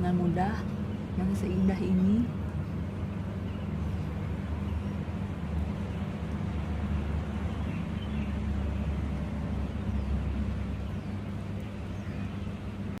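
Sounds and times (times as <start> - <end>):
low outdoor rumble: 0.0 - 13.0
faint bird chirps and calls: 0.6 - 13.0.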